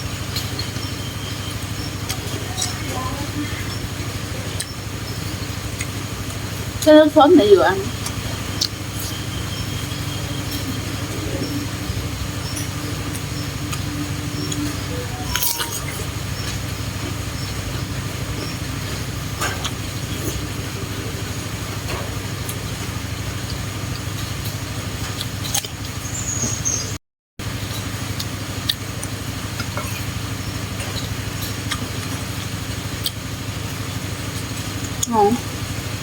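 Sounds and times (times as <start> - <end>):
low mechanical hum: 0.0 - 36.0
chewing: 28.2 - 33.2.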